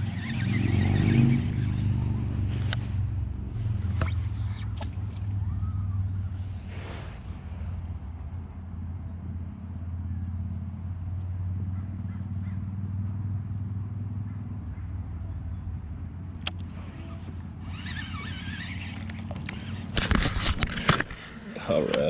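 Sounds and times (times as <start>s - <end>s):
engine humming: 0.0s - 22.0s.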